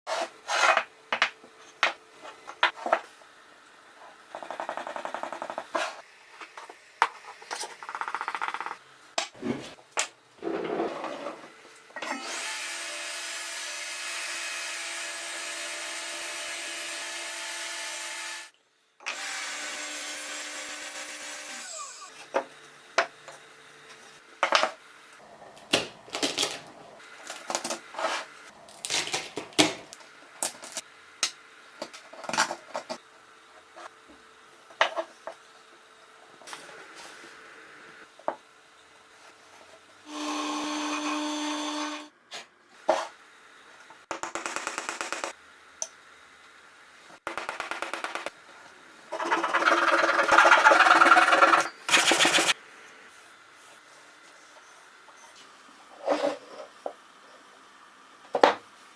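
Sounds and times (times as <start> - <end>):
power tool running: 40.1 - 42.1
table saw running: 40.1 - 42.1, 49.1 - 52.6.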